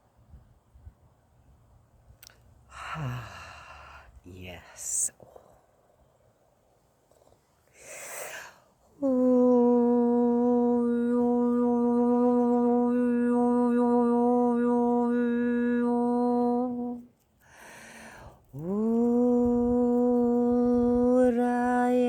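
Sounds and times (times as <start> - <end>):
woman breathing in: 2.7 - 4.2, 17.4 - 18.4
woman holding a long note: 9.0 - 17.1.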